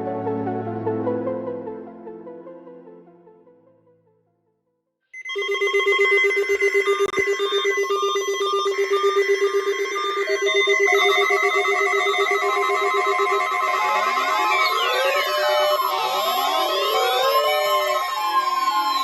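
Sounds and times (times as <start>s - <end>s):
high-pitched beeping tones: 5.2s - 19.0s.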